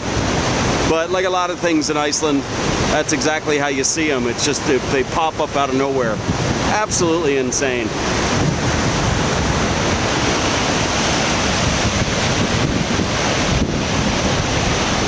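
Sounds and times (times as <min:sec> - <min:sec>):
waterfall rushing: 0:00.0 - 0:15.0
wind buffeting microphone: 0:00.0 - 0:15.0.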